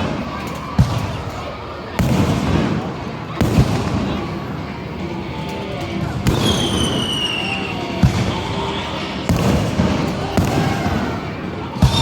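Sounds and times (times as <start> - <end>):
fireworks banging: 0.0 - 12.0
sharp firework crack: 6.2 - 8.6, 9.3 - 12.0
falling firework whistle: 6.3 - 9.6, 11.8 - 12.0.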